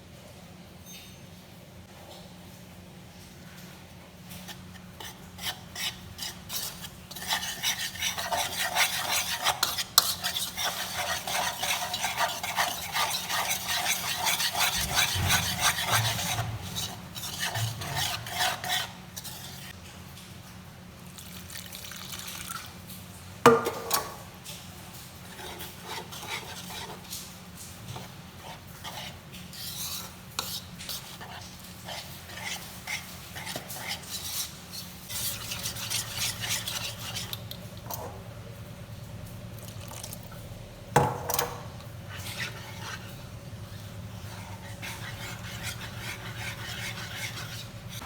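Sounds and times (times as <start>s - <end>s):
utensil stirring food in a bowl: 3.5s - 19.8s, 21.1s - 48.0s.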